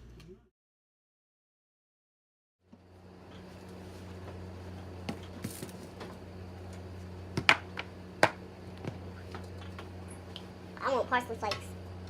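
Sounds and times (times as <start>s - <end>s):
steady low hum: 2.7s - 12.0s.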